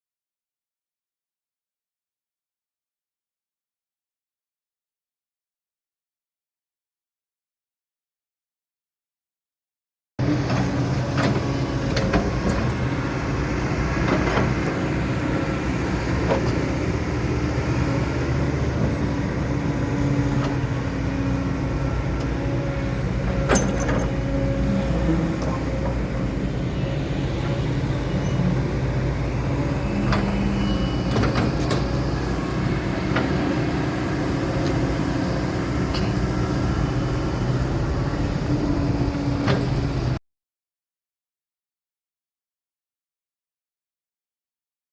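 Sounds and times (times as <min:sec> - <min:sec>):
excavator diesel engine running: 0:10.2 - 0:40.2.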